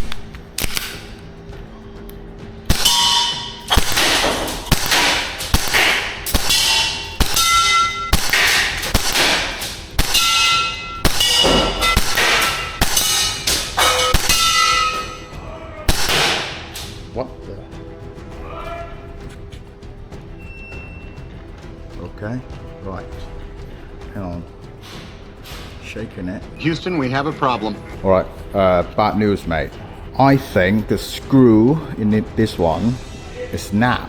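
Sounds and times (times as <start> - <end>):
airsoft gun firing: 2.7 - 14.8, 15.9 - 17.0
pellets clanging on metal targets: 2.7 - 17.1.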